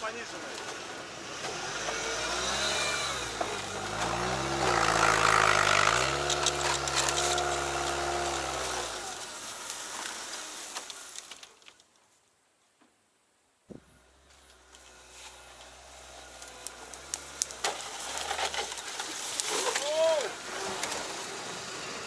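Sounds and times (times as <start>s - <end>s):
all-terrain vehicle engine pulling: 0.1s - 11.4s, 14.0s - 22.0s.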